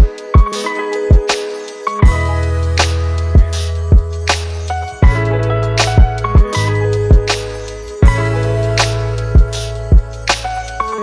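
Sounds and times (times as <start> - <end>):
background music with beat: 0.0 - 11.0
deep drum thumps: 3.4 - 4.2, 5.0 - 5.3, 8.0 - 8.3.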